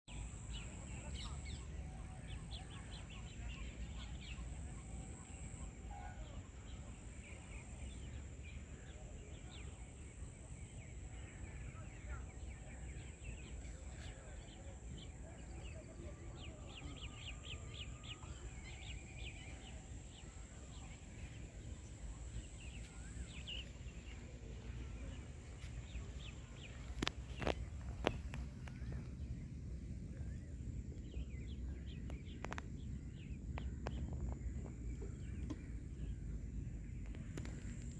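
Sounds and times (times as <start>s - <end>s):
small birds chirping: 0.0s - 37.9s
low rumble: 17.6s - 37.9s.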